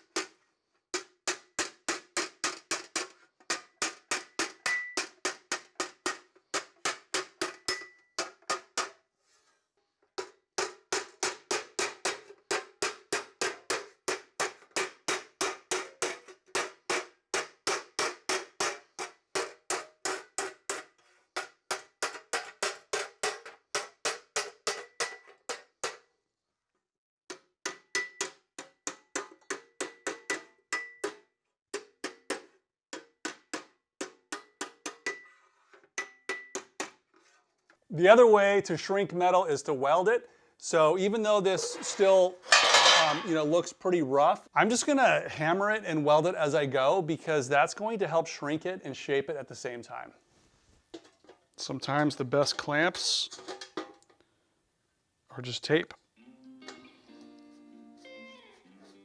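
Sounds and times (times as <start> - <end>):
hammer striking sheet metal: 41.6 - 43.4.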